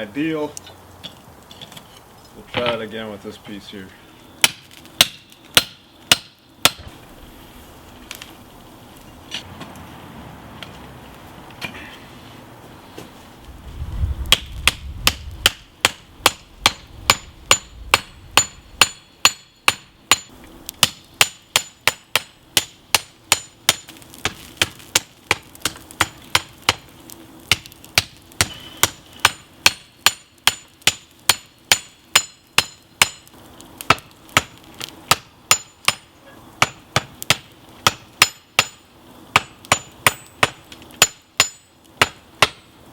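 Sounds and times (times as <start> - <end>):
low rumble and hiss: 0.0 - 42.9
hammer striking steel on anvil: 4.4 - 6.8, 14.3 - 23.9, 27.5 - 33.3, 33.9 - 42.7.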